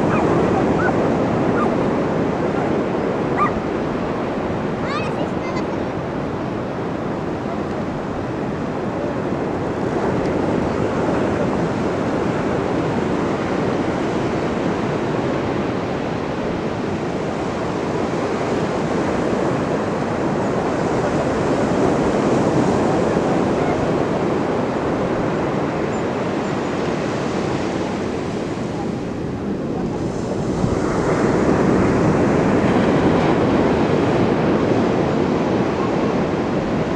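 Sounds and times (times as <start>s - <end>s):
ocean surf breaking on beach: 0.0s - 36.9s.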